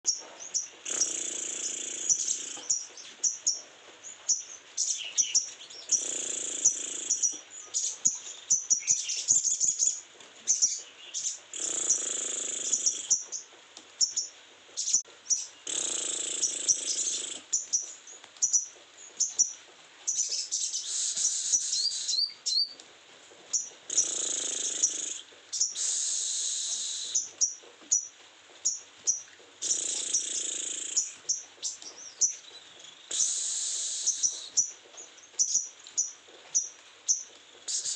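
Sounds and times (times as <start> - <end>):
bird twittering: 0.1 - 22.8, 23.5 - 37.9.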